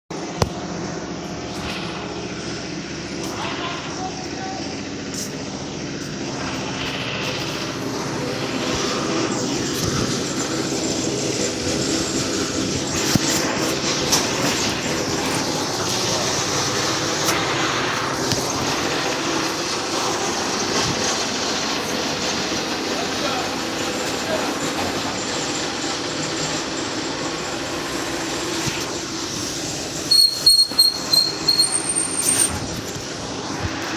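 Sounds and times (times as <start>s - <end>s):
motor running: 4.8s - 25.4s
sharp high-pitched squeaks: 30.0s - 32.8s.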